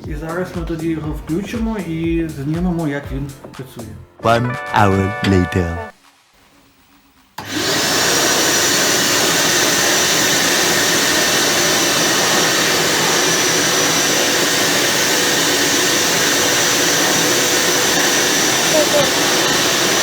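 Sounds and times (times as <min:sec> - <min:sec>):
vacuum cleaner running: 0:07.4 - 0:20.0.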